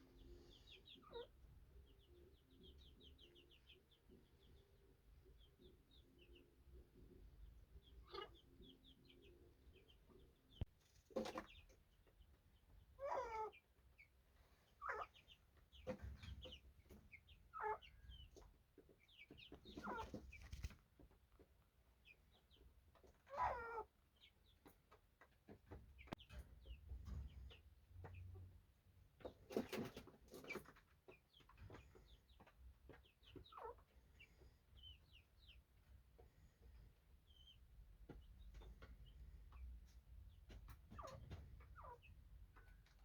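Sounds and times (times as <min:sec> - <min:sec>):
budgerigars chirping: 0:00.6 - 0:01.3, 0:07.8 - 0:09.9, 0:14.7 - 0:20.7, 0:23.3 - 0:24.6, 0:31.3 - 0:35.6, 0:40.9 - 0:42.2.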